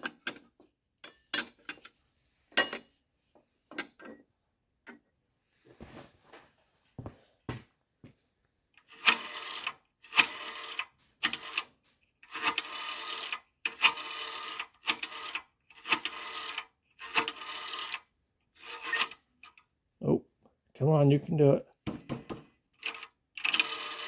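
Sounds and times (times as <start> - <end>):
payphone coin mechanism rattling: 8.9 - 11.7, 12.3 - 19.2, 22.8 - 24.0.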